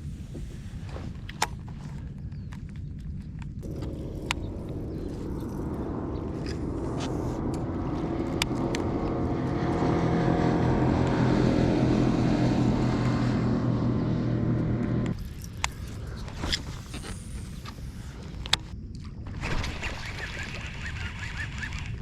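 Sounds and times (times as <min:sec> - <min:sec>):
boat motor humming: 0:03.6 - 0:15.5.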